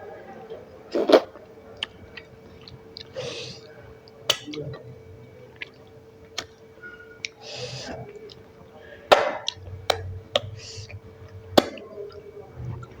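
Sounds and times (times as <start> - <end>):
chewing and wet mouth noises: 1.0 - 8.8, 9.4 - 13.0
hissing breath: 3.2 - 3.8, 7.4 - 8.1, 10.4 - 11.1.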